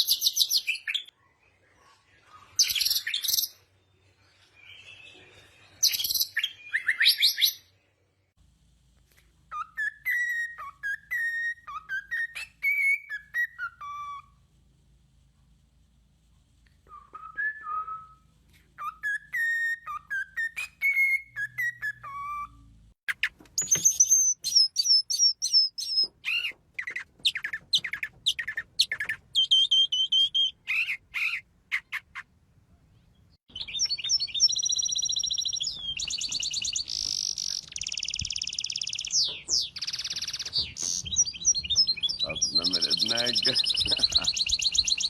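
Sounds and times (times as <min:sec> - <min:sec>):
whistled bird notes: 0:04.2 - 0:07.7, 0:09.5 - 0:14.4, 0:16.9 - 0:32.0, 0:33.5 - 0:45.0
downsweeping bird chirps: 0:18.8 - 0:32.2, 0:32.9 - 0:45.0.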